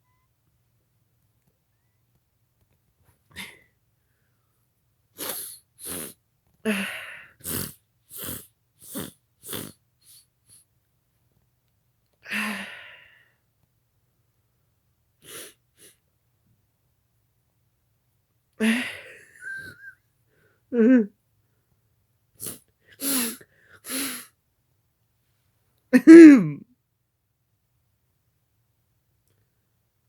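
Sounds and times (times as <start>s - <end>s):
man sneezing: 22.4s - 24.3s.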